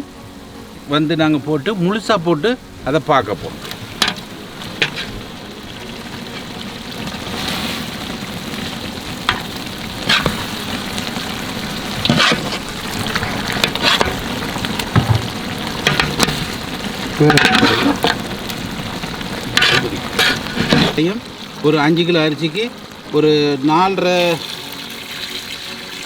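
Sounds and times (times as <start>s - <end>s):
food sizzling in a pot: 1.6s - 26.0s
spoon scraping and knocking pot: 4.8s - 5.2s, 12.0s - 12.7s, 13.6s - 14.3s, 14.9s - 16.5s, 17.3s - 18.2s, 19.6s - 21.0s.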